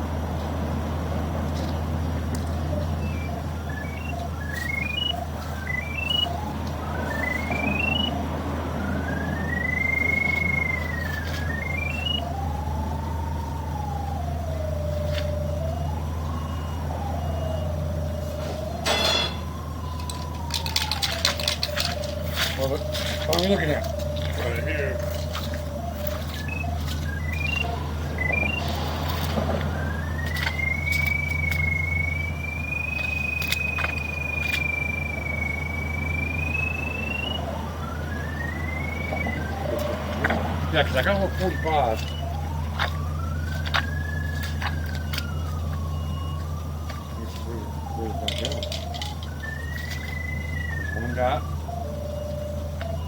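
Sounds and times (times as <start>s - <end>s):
low engine hum: 0.0s - 53.0s
pipe locator wavering tone: 2.3s - 53.0s
faint clicks: 19.9s - 24.4s.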